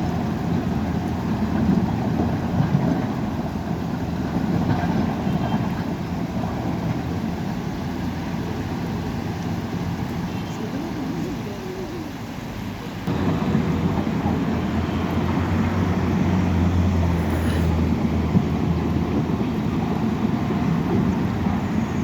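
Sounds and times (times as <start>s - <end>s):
diesel engine rumbling: 0.0s - 22.0s.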